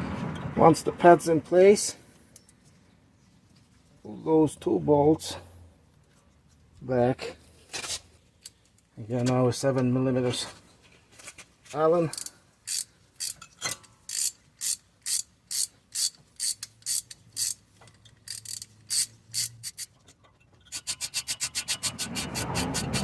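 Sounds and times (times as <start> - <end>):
ratchet clicking: 12.1 - 20.0, 20.6 - 23.0.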